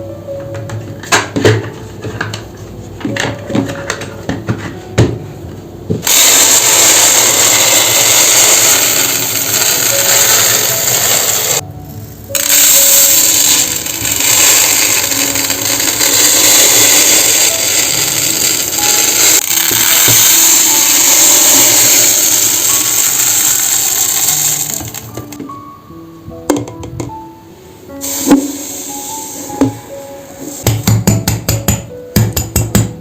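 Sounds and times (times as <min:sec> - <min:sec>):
electric motor appliance running: 0:06.0 - 0:25.4.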